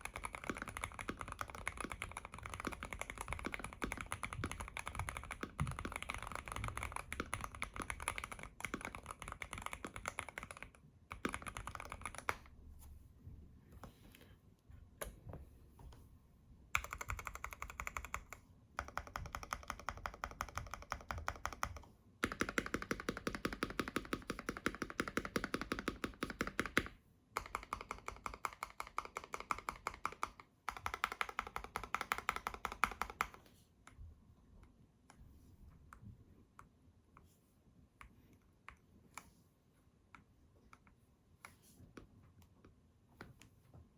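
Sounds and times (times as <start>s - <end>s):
mechanical keyboard typing: 0.0s - 12.5s, 16.8s - 33.4s.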